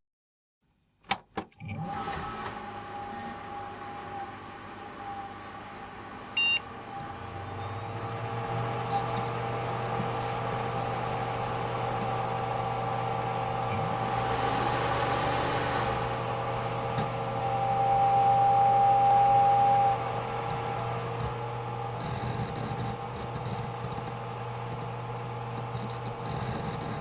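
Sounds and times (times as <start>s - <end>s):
computer fans humming: 1.8s - 27.0s.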